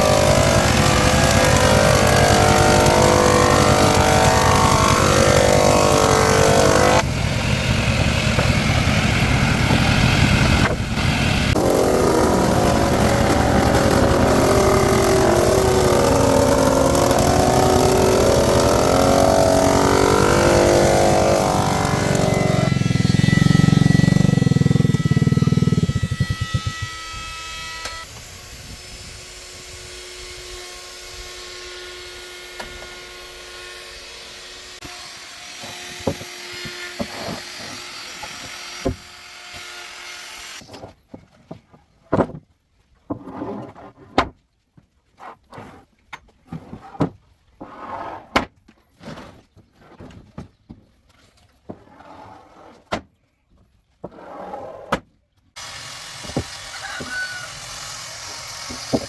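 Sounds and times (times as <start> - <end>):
woodworking machine hum: 0.0 - 40.6, 55.6 - 59.0
knocks and scrapes on wood: 35.6 - 39.0, 40.6 - 55.1.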